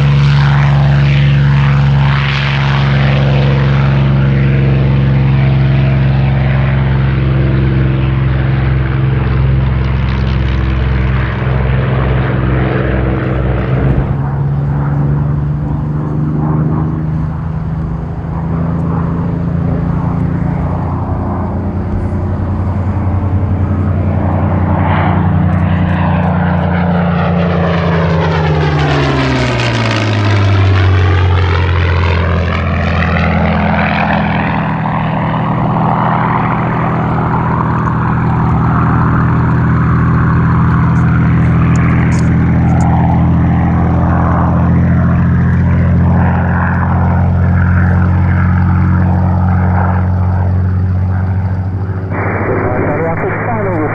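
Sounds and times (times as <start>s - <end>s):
aircraft engine flying past: 0.0s - 53.9s
sweeping whoosh: 13.2s - 24.8s.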